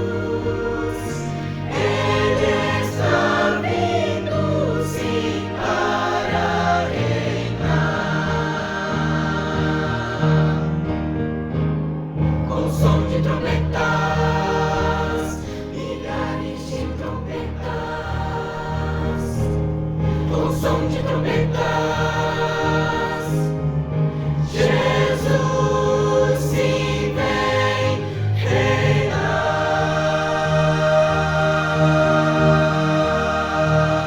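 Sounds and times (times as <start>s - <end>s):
instrumental accompaniment: 0.0s - 11.0s
choir singing a hymn: 0.0s - 11.3s, 12.2s - 34.0s.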